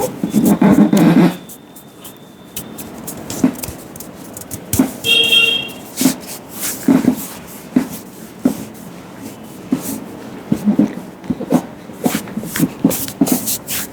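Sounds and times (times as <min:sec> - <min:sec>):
short high-pitched beep: 0:00.2 - 0:02.8, 0:05.0 - 0:05.8
hands slapping on a head: 0:02.6 - 0:06.2.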